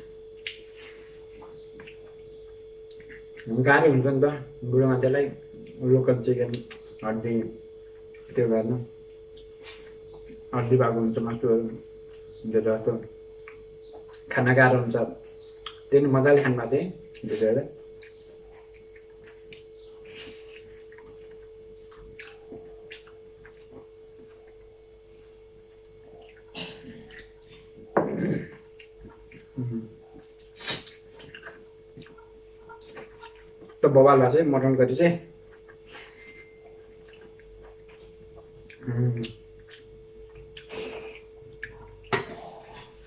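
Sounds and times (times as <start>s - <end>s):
steady hum: 0.0s - 43.0s
person chewing food: 0.3s - 3.5s, 13.4s - 14.3s, 15.3s - 15.9s, 17.1s - 33.8s, 35.4s - 43.0s.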